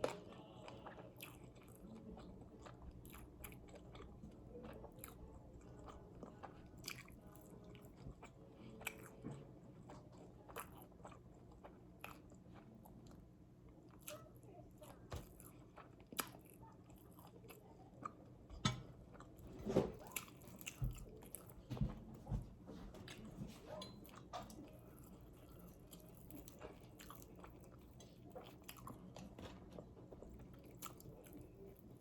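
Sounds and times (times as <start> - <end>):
crunchy biting and chewing: 23.9 - 29.3.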